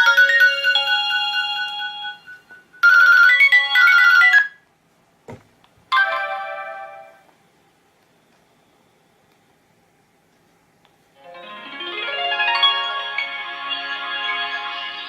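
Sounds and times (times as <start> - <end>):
electronic ringtone melody: 0.0 - 4.6, 6.0 - 7.2, 11.2 - 15.0.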